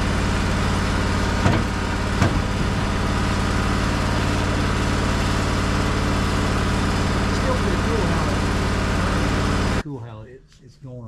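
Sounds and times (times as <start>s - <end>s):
sharp knocks: 0.0s - 3.1s
sawmill engine running: 0.0s - 9.8s.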